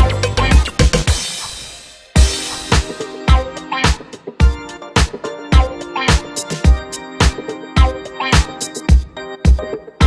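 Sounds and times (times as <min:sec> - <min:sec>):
kick drum beat: 0:00.0 - 0:01.2, 0:02.2 - 0:08.0, 0:08.9 - 0:09.8
background music: 0:00.0 - 0:10.0.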